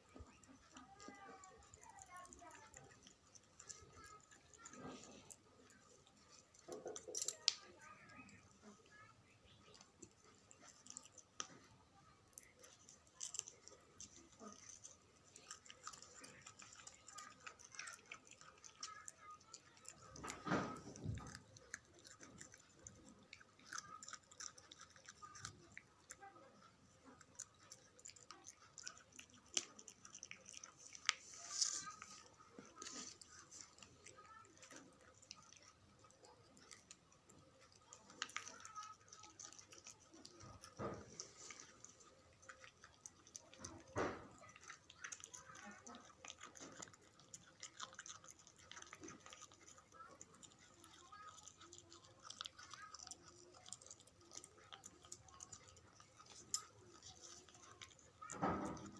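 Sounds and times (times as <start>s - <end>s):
puppy chewing food: 0.0s - 58.9s.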